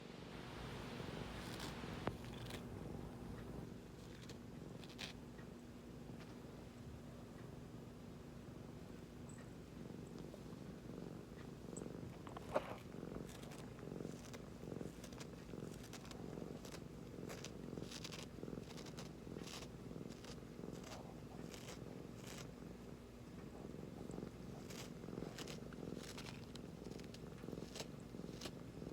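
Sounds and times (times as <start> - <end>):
cat purring: 0.0 - 28.9
faint rustles: 0.5 - 7.5, 8.5 - 22.6.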